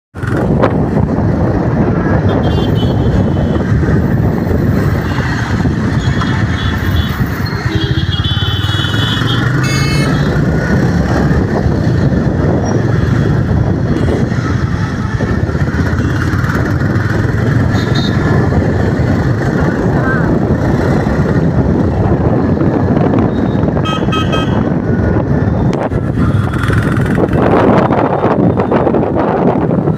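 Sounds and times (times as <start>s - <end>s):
motorcycle engine running: 0.2s - 29.9s.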